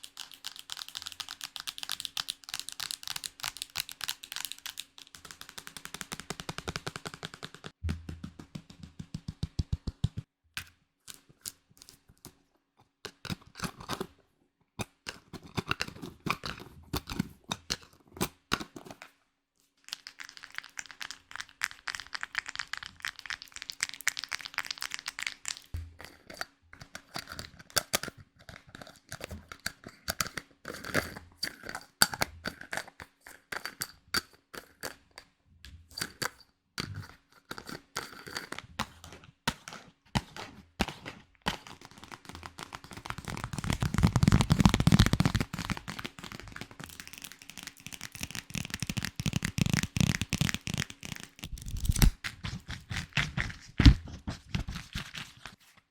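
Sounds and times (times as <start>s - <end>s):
crisp tapping clicking and crackling: 0.0s - 10.3s, 19.9s - 30.9s, 37.6s - 55.5s.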